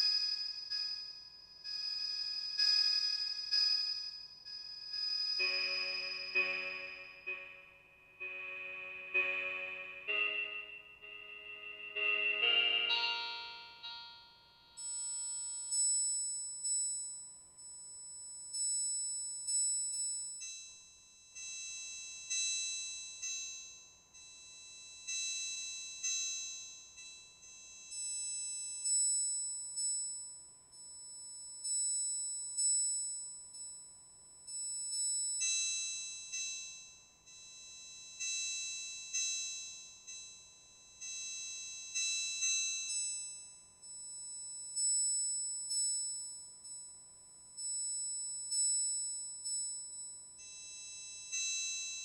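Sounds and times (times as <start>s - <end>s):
faint steady tone: 0.0s - 52.0s
high bell-like synthesizer notes: 5.4s - 14.9s.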